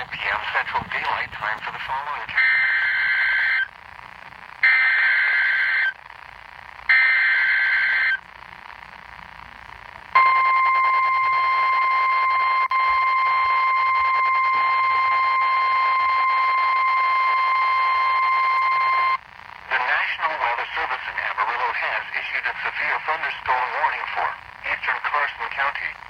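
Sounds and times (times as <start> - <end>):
buzzing digital bursts: 1.4 - 3.8, 4.6 - 6.0, 6.8 - 8.2
steady warning alarm tone: 2.3 - 3.7, 4.6 - 6.0, 6.9 - 8.2, 10.2 - 19.2.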